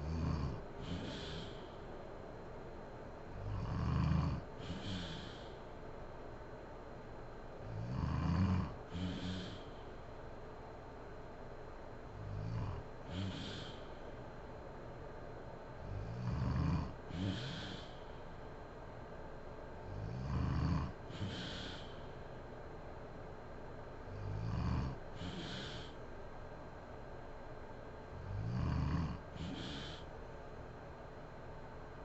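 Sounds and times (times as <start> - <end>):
woman snoring: 0.0 - 1.7, 3.3 - 5.6, 7.6 - 9.8, 12.2 - 14.0, 15.9 - 18.0, 19.9 - 22.0, 24.1 - 26.0, 28.2 - 30.1.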